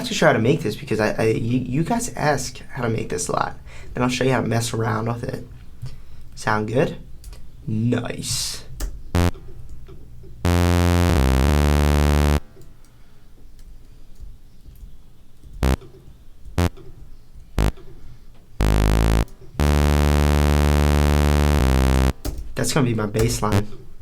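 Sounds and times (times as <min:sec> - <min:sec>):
synthesizer bass notes: 0:10.5 - 0:12.4, 0:17.6 - 0:17.8, 0:18.6 - 0:22.2.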